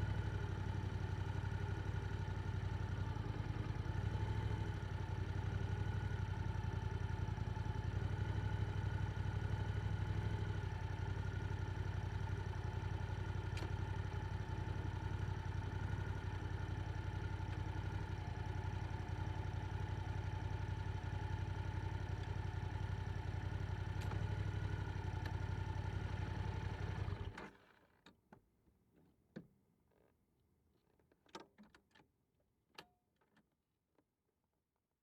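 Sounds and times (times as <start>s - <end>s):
motorcycle engine idling: 0.0s - 27.4s.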